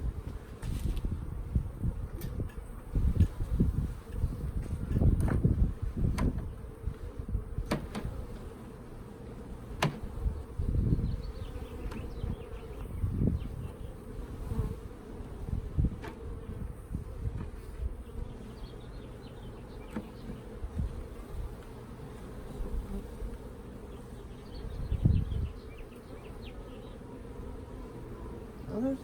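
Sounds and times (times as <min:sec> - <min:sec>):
honeybees buzzing: 0:00.0 - 0:29.0
low thumps from handling: 0:02.1 - 0:07.0, 0:07.6 - 0:08.5, 0:09.7 - 0:10.3.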